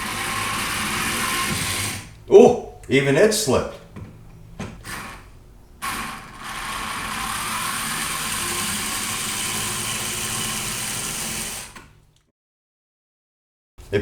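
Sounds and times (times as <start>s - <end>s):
powered screwdriver running: 0.0s - 2.2s, 5.8s - 11.9s.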